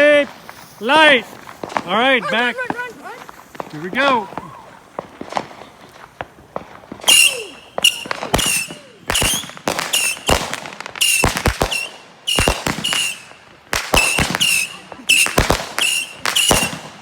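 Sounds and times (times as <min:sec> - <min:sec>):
missiles whistling: 0:07.0 - 0:10.4, 0:11.0 - 0:13.4, 0:14.0 - 0:16.8.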